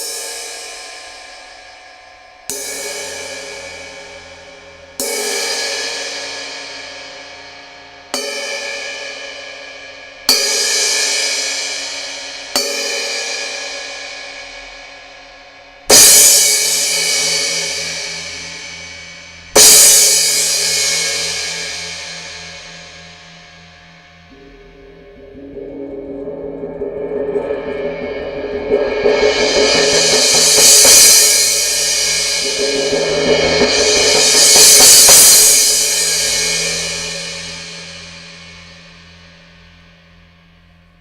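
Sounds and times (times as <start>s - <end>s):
crash cymbal ringing: 15.9s - 41.0s.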